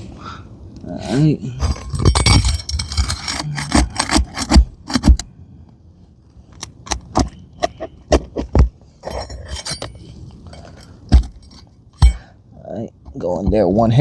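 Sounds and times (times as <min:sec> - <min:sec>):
tool scraping: 0:01.7 - 0:05.2, 0:07.6 - 0:12.2
hand tools tapping on metal: 0:09.0 - 0:12.3.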